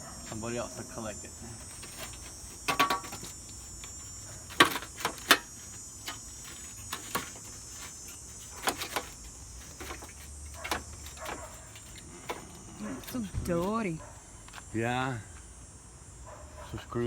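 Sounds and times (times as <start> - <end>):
clicks and knocks of parts handled: 1.7 - 13.7.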